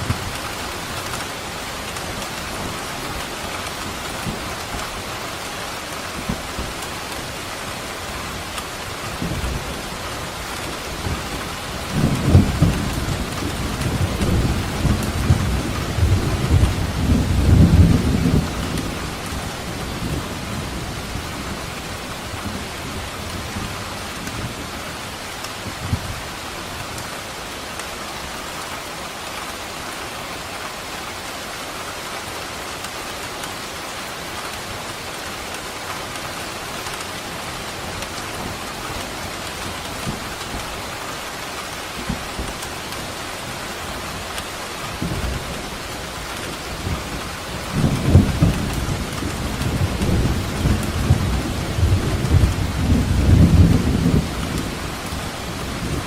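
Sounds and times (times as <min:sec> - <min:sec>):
steady rain: 0:00.0 - 0:56.0
rolling thunder rumble: 0:46.7 - 0:56.0.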